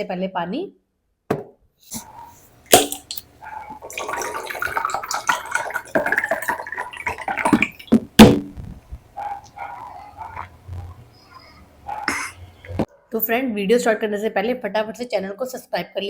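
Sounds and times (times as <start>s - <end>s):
water sloshing in a glass: 2.0s - 12.8s.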